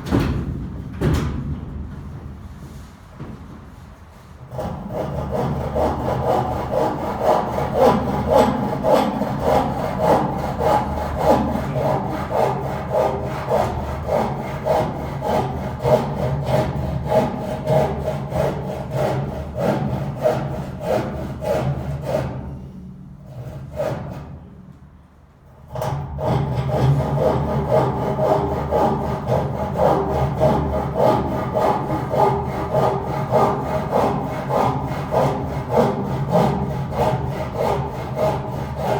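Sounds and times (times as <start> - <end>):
saw cutting through wood: 4.5 - 22.4, 26.2 - 38.9.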